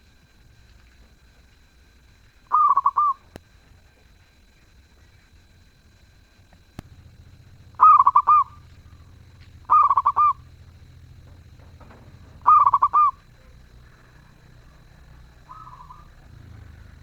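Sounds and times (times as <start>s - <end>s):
dove cooing: 2.4s - 4.1s, 6.8s - 17.0s.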